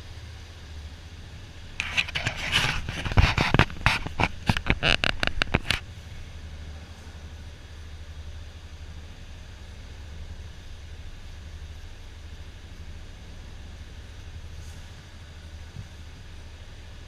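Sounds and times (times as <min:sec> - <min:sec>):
motorcycle engine running steadily: 0:00.0 - 0:17.0.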